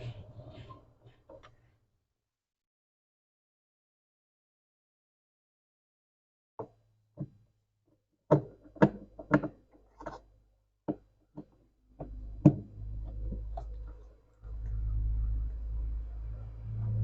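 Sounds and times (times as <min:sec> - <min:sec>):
plastic parts knocking and clicking: 0:08.3 - 0:10.3
low steady rumble: 0:12.0 - 0:17.0.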